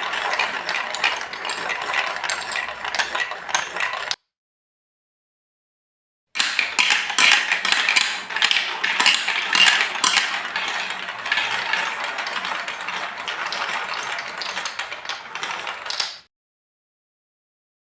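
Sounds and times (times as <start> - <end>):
marbles rolling on plastic track: 0.0 - 4.2, 6.4 - 16.3.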